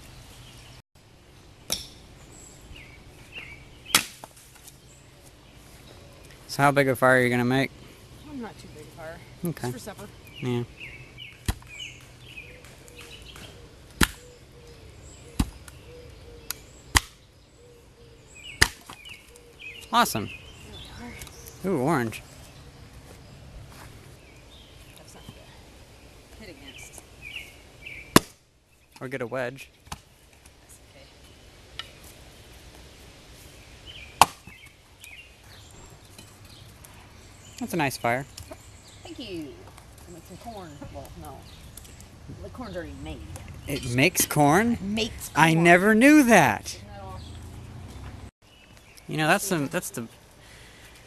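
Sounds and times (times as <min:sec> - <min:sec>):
birds chirping faintly: 0:00.0 - 0:51.0
axe blows chopping firewood: 0:03.9 - 0:04.5, 0:12.6 - 0:14.2, 0:15.4 - 0:15.8, 0:16.9 - 0:17.2, 0:18.5 - 0:19.1, 0:28.1 - 0:28.4, 0:34.2 - 0:34.7.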